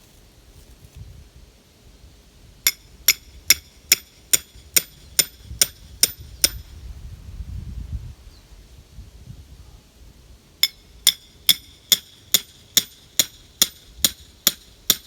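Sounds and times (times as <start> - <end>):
sledgehammer striking metal rebar: 2.7 - 6.6, 10.6 - 15.0.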